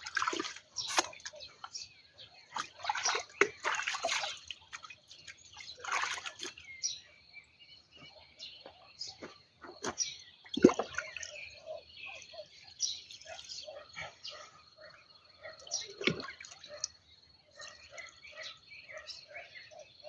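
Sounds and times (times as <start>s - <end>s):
water splashing and dripping: 0.0s - 1.8s, 2.5s - 6.8s, 9.6s - 11.8s, 15.7s - 17.0s.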